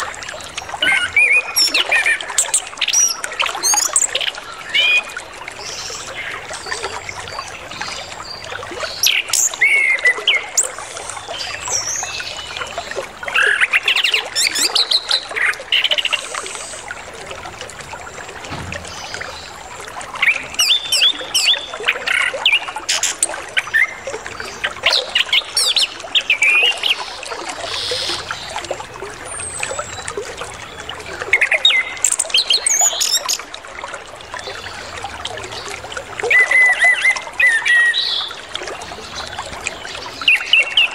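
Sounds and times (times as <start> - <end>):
water trickling: 0.0 - 40.9.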